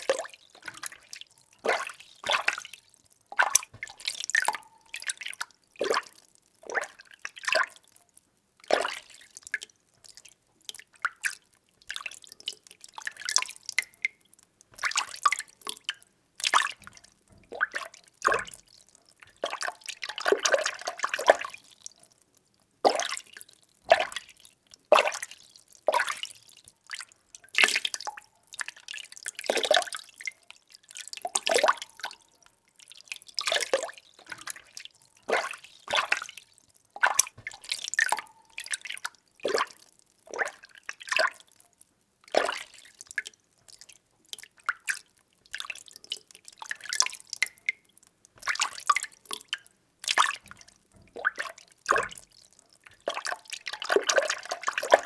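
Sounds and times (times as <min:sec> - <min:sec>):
water sloshing and splashing: 0:00.0 - 0:07.8, 0:14.8 - 0:21.7, 0:32.9 - 0:41.4, 0:48.4 - 0:55.0.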